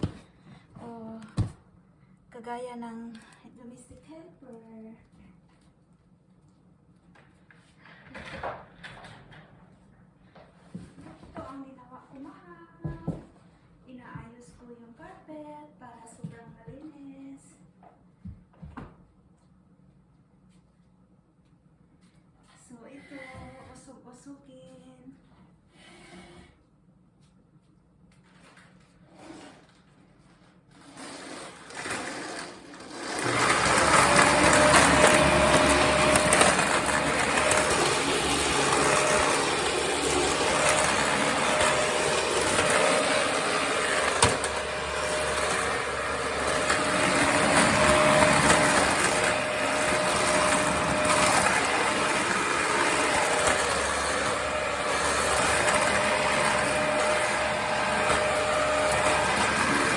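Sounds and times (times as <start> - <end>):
vacuum cleaner running: 30.8 - 59.9.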